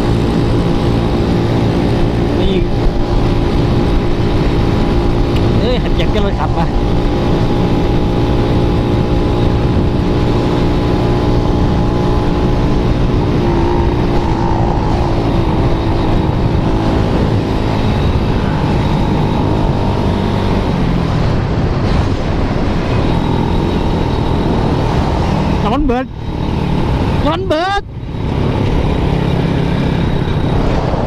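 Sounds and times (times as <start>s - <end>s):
engine droning under load: 0.0s - 31.0s
rushing noise: 0.0s - 31.0s.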